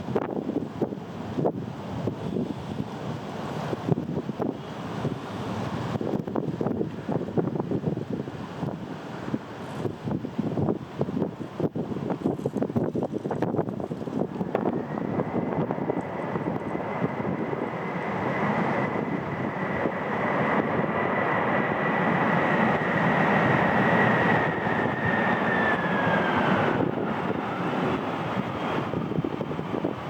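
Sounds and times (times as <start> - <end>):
jet airliner passing by: 0.0 - 30.0.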